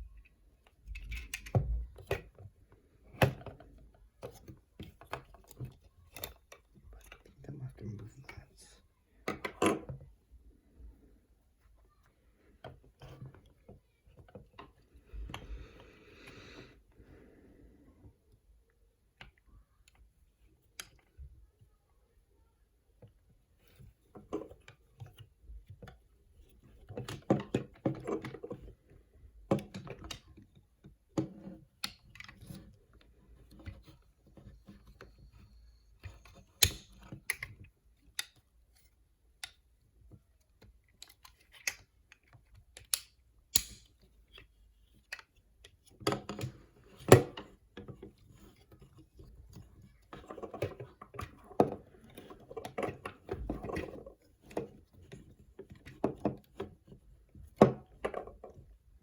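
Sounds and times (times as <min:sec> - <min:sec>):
plastic clicks and snaps: 0:36.0 - 0:47.9.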